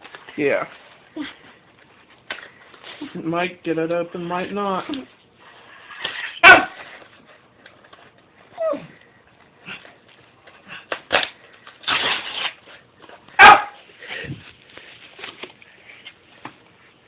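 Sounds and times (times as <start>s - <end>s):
dog barking: 6.4s - 6.8s, 13.4s - 13.8s
dog whining: 8.5s - 9.0s.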